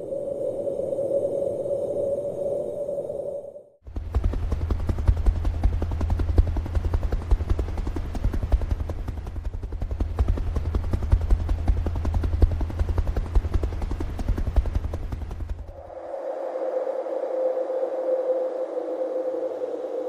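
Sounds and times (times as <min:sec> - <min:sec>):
helicopter rotor chopping: 0:03.8 - 0:15.8.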